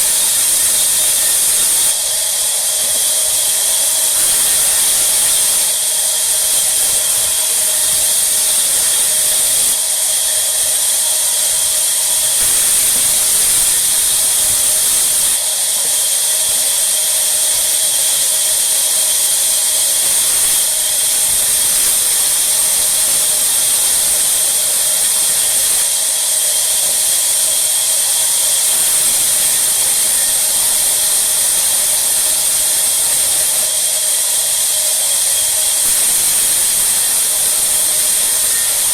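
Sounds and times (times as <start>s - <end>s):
saw cutting wood: 0.0s - 38.9s.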